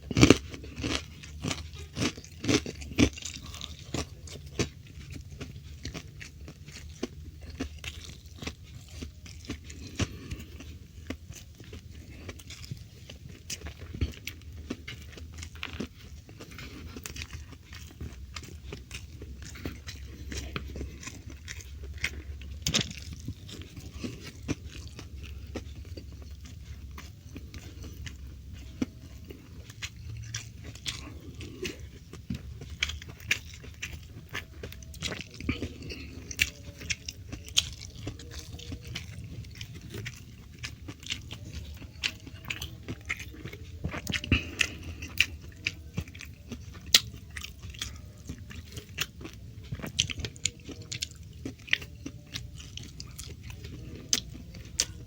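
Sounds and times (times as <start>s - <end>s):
low steady hum: 0.0s - 55.0s
person chewing and crunching: 0.0s - 55.0s.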